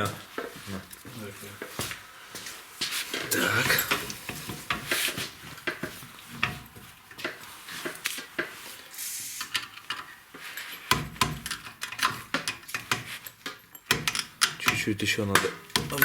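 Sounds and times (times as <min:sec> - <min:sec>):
metallic clicks of hand tools: 0:10.9 - 0:16.0.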